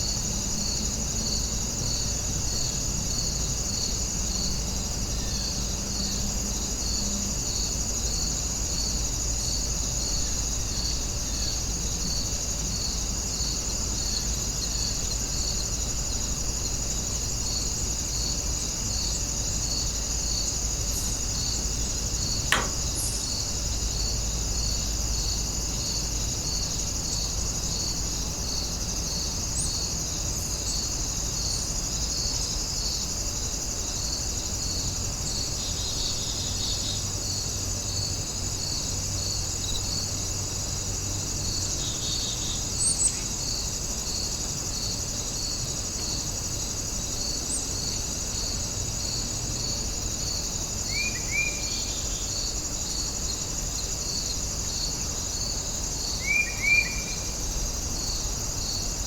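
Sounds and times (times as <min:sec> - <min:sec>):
crickets chirping: 0:00.0 - 0:59.0
sharp click: 0:22.5 - 0:23.2.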